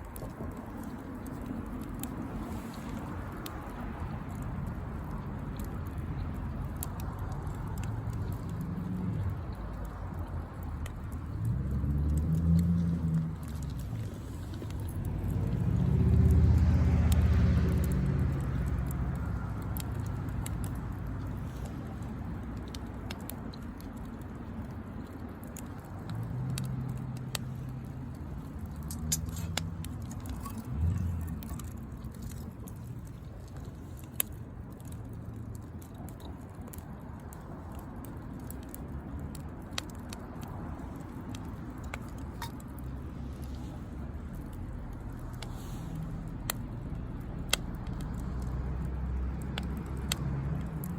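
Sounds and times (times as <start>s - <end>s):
wood fire crackling and popping: 0.0s - 50.9s
car passing: 6.4s - 23.0s, 24.0s - 33.3s, 39.3s - 50.9s.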